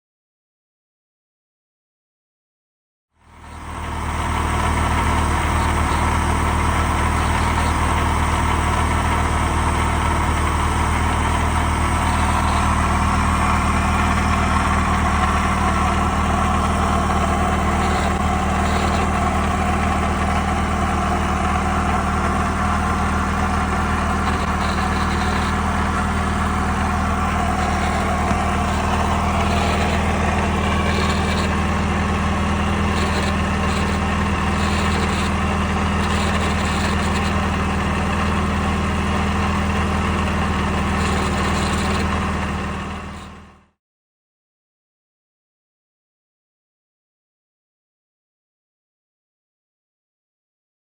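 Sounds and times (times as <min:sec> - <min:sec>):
car engine running: 0:03.2 - 0:43.7
engine rattle: 0:03.2 - 0:43.7.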